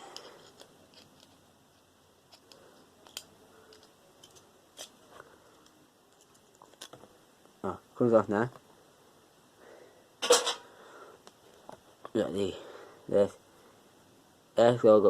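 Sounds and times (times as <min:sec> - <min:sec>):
hand tools clicking and snapping: 0:00.0 - 0:01.4, 0:02.3 - 0:05.0.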